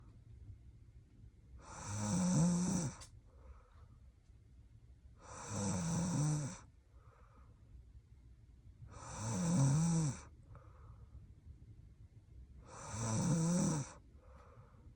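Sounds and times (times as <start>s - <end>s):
woman snoring: 1.6s - 3.1s, 5.2s - 6.7s, 9.0s - 10.3s, 12.7s - 14.0s
faint breaths: 1.6s - 4.1s, 5.2s - 7.8s, 10.1s - 11.4s, 13.8s - 14.9s.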